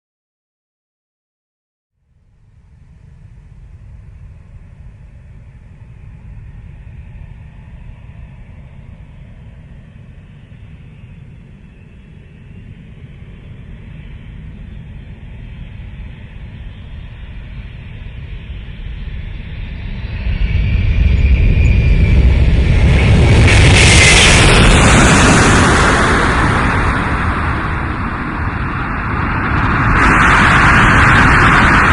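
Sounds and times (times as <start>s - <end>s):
fighter jet engine rumble: 2.2s - 31.9s
jet passing with hissing blast: 20.4s - 31.9s.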